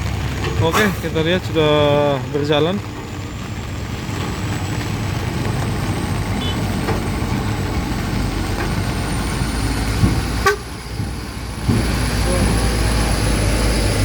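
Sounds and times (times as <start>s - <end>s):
truck engine rumbling: 0.0s - 14.0s.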